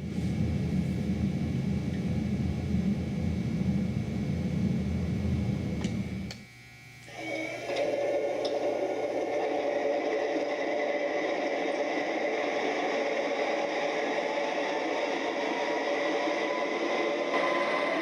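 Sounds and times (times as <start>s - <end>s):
higher multi-tone running sound: 4.9s - 18.0s.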